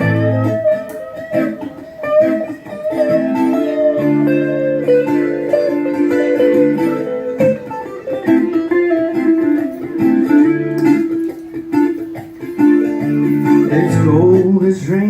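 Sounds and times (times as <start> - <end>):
instrumental guitar music: 0.0 - 15.0.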